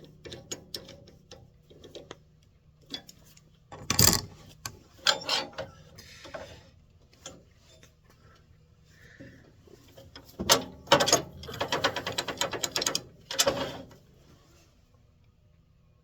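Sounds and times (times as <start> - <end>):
metallic clicks and clunks: 2.8 - 5.7, 10.0 - 14.0.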